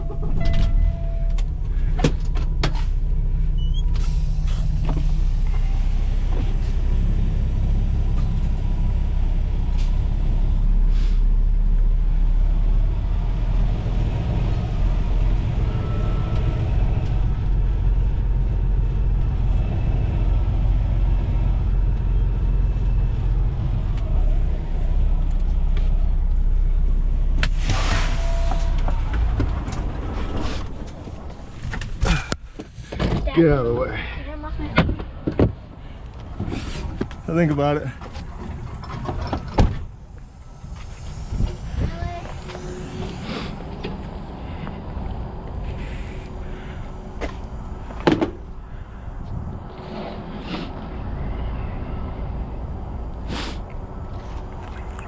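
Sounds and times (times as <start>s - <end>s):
diesel engine rumbling: 0.0s - 55.0s
air hiss burst: 27.4s - 28.6s, 40.3s - 44.1s, 53.3s - 53.7s.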